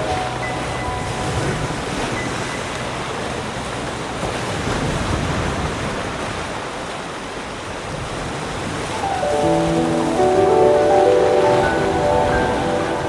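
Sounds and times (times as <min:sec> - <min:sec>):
ocean waves breaking on beach: 0:00.0 - 0:13.0.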